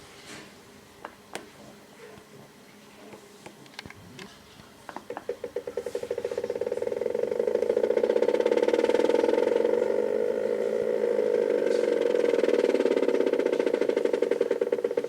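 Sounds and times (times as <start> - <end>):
stepper motor whining and pulsing: 5.3 - 15.0.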